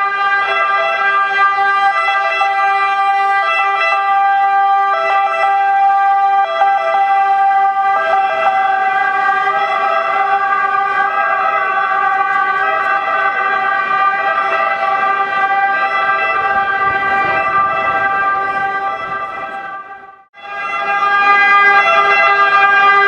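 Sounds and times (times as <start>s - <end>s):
ambulance sirens: 0.0s - 23.0s
street traffic rumble: 0.0s - 23.0s.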